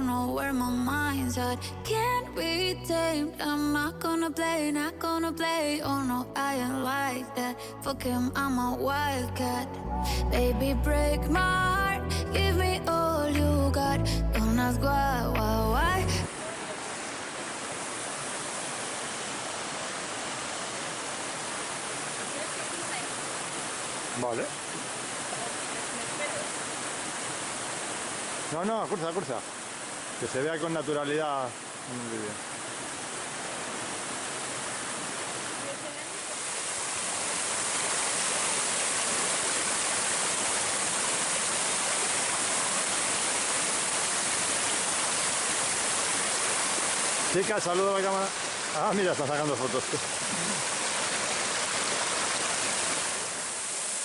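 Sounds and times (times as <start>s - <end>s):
waterfall roar: 16.3s - 54.0s.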